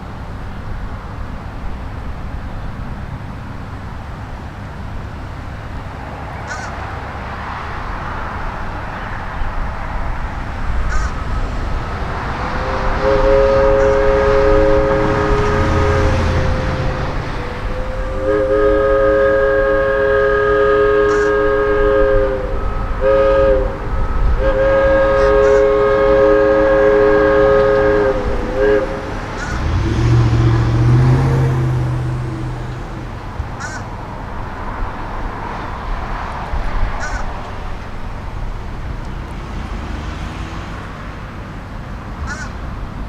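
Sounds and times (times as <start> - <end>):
train rumble: 0.0 - 43.0
locomotive air horn blasts: 10.0 - 34.0.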